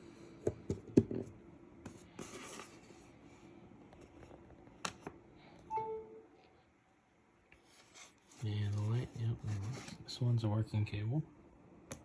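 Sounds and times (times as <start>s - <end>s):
two-pitch beep: 5.7s - 6.3s.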